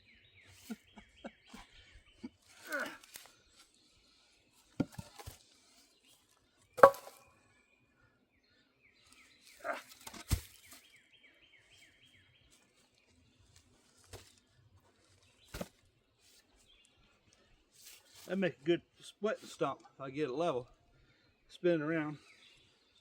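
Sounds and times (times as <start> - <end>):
bird chirping: 0.0 - 13.6
wooden logs knocking and thudding: 4.7 - 5.5, 6.8 - 7.3, 9.6 - 10.8, 14.0 - 15.9.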